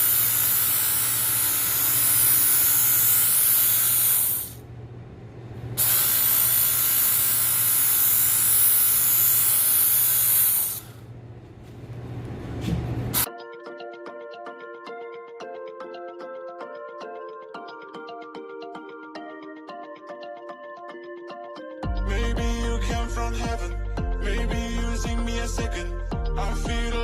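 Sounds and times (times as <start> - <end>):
sharpener motor hum: 0.0 - 4.6, 5.8 - 11.0.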